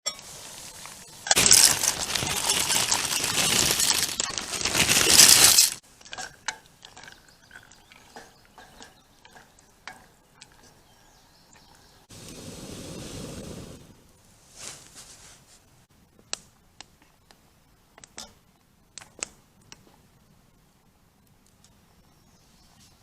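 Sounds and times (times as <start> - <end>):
small hard objects clattering: 0.2 - 10.7.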